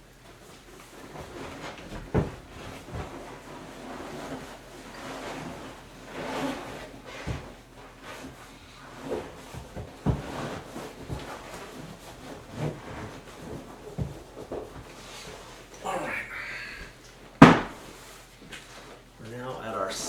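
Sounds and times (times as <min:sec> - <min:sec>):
dull knocks: 0:17.4 - 0:17.8.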